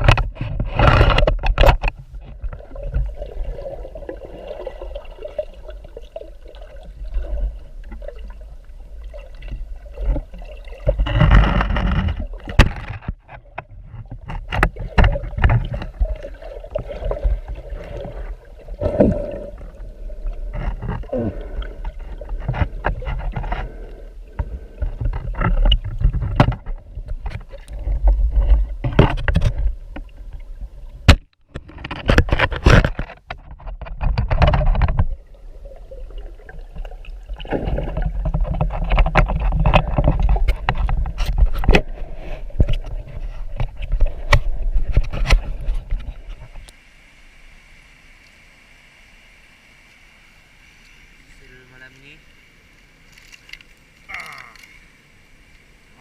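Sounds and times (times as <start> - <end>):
sharp knocks and clicks: 0.0 - 3.0
water sloshing and gurgling: 0.0 - 48.4.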